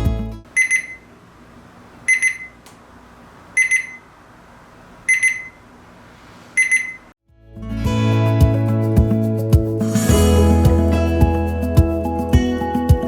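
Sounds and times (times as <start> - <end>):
high-pitched alarm beeps: 0.6 - 1.1, 2.1 - 2.6, 3.6 - 4.0, 5.1 - 5.6, 6.6 - 7.0.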